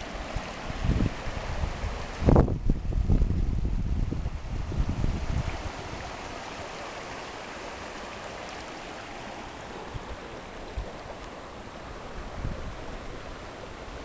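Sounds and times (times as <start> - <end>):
river rapids rushing: 0.0 - 2.4, 4.4 - 14.0
wind buffeting microphone: 0.0 - 6.5, 9.8 - 13.6.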